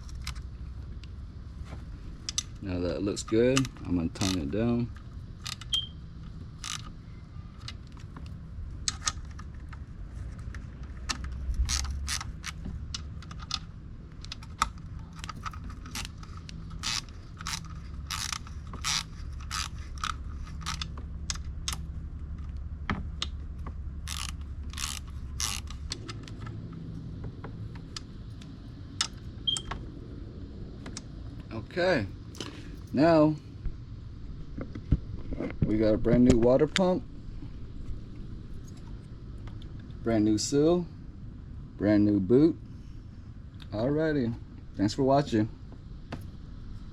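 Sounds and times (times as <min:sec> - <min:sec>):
steady low hum: 0:00.0 - 0:46.9
ratchet wrench clicking: 0:11.5 - 0:13.6, 0:15.2 - 0:21.8, 0:24.0 - 0:26.0.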